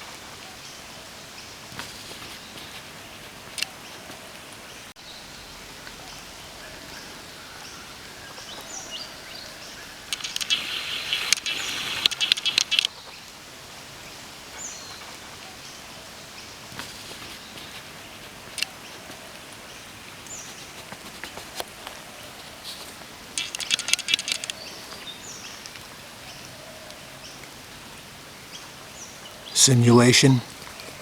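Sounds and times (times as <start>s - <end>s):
steady background hiss: 0.0s - 31.0s
rapid high chattering: 10.1s - 12.9s, 23.4s - 24.6s
high bird chirps: 10.2s - 12.9s, 23.4s - 24.6s.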